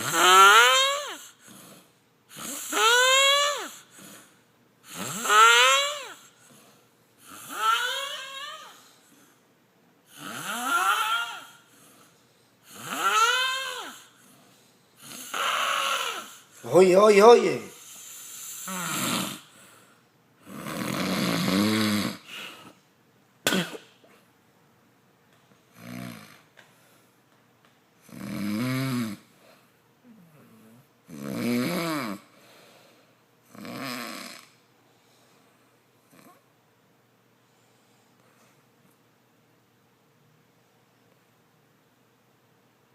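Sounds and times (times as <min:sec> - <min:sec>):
chicken snoring calls: 0:10.1 - 0:12.1, 0:12.7 - 0:14.1, 0:15.0 - 0:16.5, 0:20.4 - 0:22.5, 0:33.5 - 0:34.6
chicken making snore-like sounds: 0:20.4 - 0:22.5, 0:25.8 - 0:26.4.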